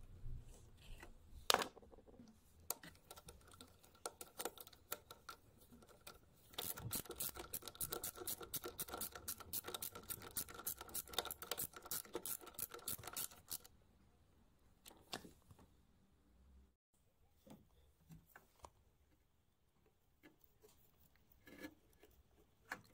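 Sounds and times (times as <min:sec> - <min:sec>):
rapid scratching and clicking: 0:02.7 - 0:13.7.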